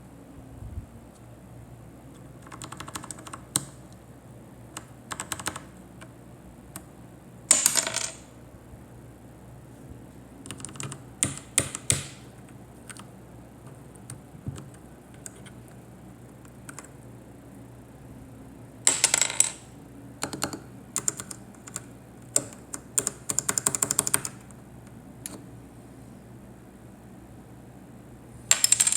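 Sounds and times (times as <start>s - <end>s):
keyboard keycaps clicking: 2.4s - 3.8s, 4.7s - 6.1s, 10.5s - 15.6s, 20.2s - 24.5s.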